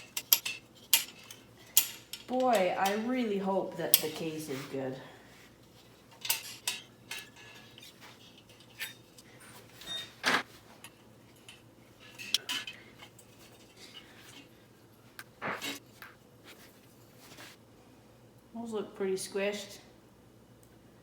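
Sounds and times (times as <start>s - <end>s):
metal tools and parts clinking: 0.0s - 3.1s, 5.7s - 14.5s.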